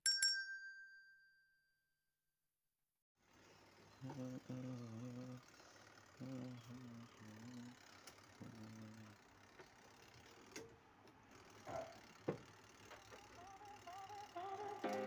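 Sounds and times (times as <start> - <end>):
stalled motor humming: 3.2 - 15.0.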